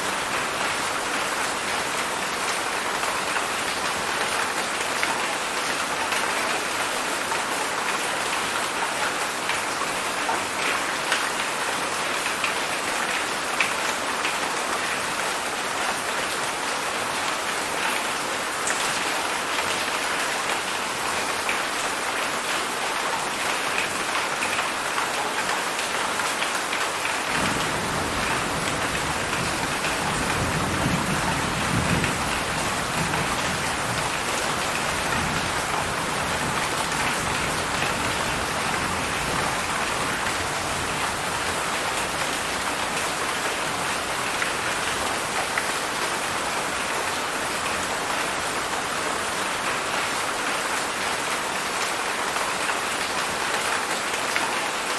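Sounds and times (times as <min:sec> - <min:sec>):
heavy rain falling: 0:00.0 - 0:54.9
distant thunder rumble: 0:27.3 - 0:34.2.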